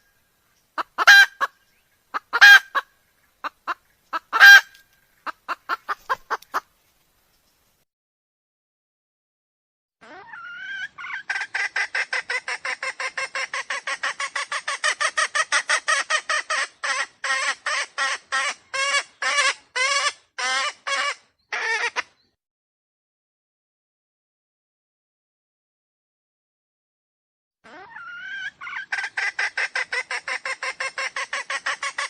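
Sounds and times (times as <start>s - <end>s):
junglefowl calling short sharp notes: 0.8s - 1.6s, 2.2s - 2.9s, 3.6s - 6.7s.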